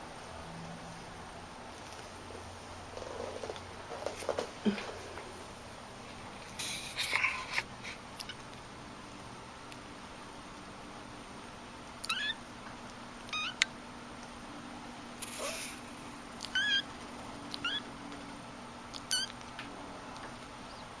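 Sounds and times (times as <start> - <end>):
brief hiss: 6.6 - 7.1, 15.2 - 15.9
cat mewing: 12.0 - 12.4, 13.3 - 13.7, 16.4 - 16.9, 17.5 - 17.8.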